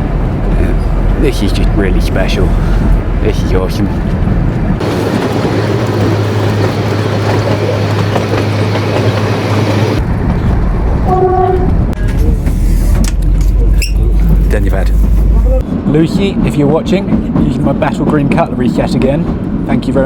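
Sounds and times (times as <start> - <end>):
train running noise: 0.0 - 20.0
train horn toot: 11.0 - 11.9.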